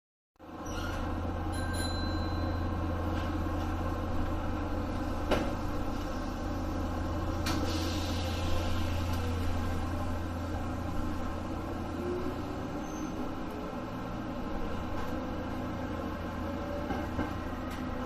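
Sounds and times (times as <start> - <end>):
train electrical hum: 1.0 - 18.0
air hiss: 7.5 - 9.8.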